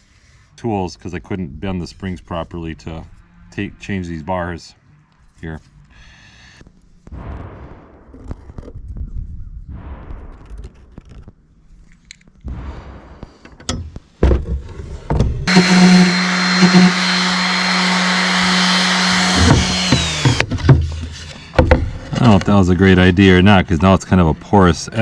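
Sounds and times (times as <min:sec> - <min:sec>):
electric power tool whining: 0:15.5 - 0:20.8.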